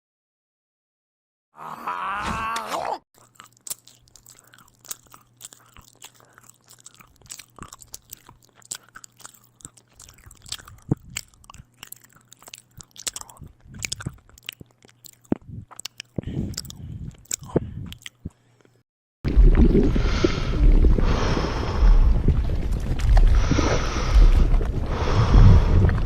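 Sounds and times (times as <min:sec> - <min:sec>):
crunchy chewing: 0:03.2 - 0:18.8.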